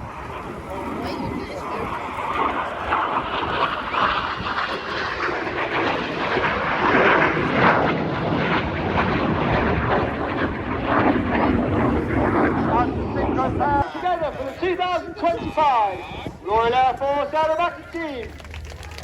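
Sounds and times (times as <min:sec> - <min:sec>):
jets flying past: 0:00.0 - 0:15.5.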